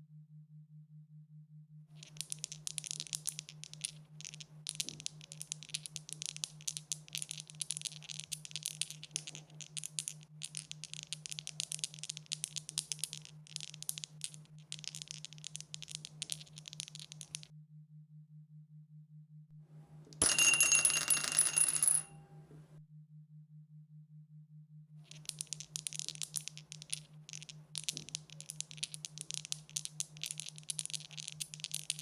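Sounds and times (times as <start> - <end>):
dice rattling: 2.0 - 17.5, 19.8 - 22.7, 25.1 - 32.0.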